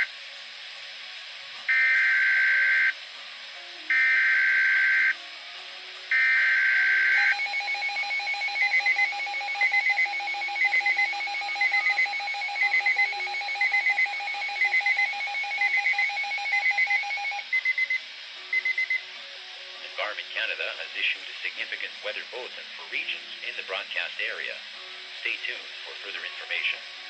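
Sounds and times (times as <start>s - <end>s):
pulsing electronic alert beeps: 6.1s - 19.0s
screechy digital data tone: 6.1s - 19.0s.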